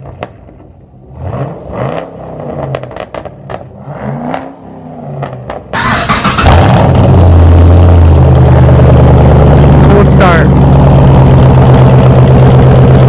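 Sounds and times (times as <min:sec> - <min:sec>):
car engine starting loudly: 0:01.1 - 0:13.0
sharp clicks and clatter: 0:05.8 - 0:06.9.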